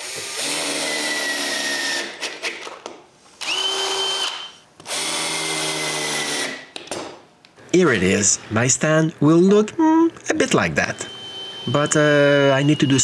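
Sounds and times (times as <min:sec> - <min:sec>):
power drill driving screws: 0:03.4 - 0:06.6.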